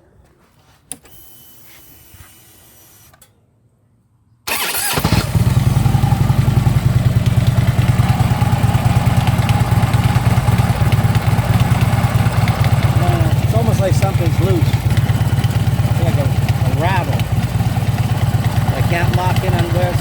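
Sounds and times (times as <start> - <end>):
electric starter cranking: 4.5 - 20.0
engine rattle: 4.5 - 20.0
motorcycle engine idling: 4.5 - 20.0.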